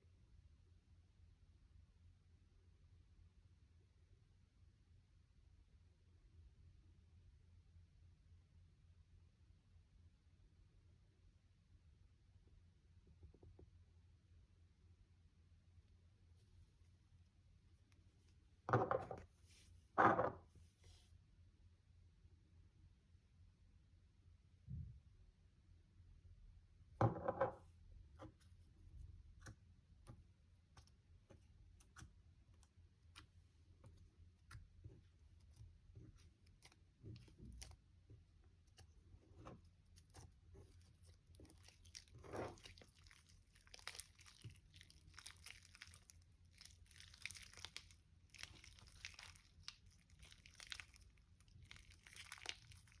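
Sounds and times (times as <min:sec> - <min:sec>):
slime crackling and popping: 0:35.4 - 0:37.8, 0:38.7 - 0:53.0.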